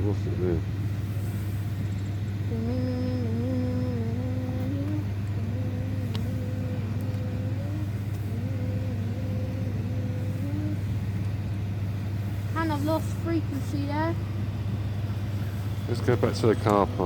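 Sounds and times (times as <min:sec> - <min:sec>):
vehicle engine droning: 0:00.0 - 0:17.0.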